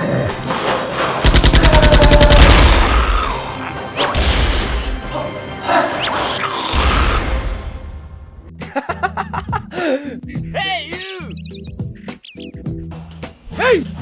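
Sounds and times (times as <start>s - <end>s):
heavy hits: 0.0s - 8.5s
background music: 0.0s - 14.0s
automatic gunfire: 1.0s - 3.4s.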